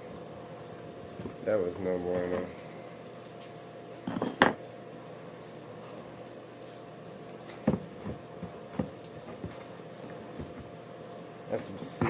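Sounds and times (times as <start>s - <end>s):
steady low hum: 0.0s - 12.0s
knocks of objects being handled: 7.4s - 10.8s.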